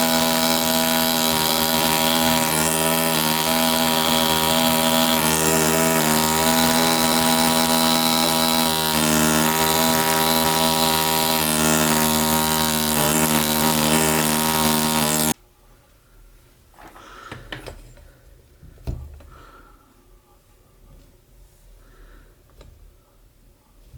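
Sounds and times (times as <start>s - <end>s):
air scribe buzzing: 0.0s - 15.4s.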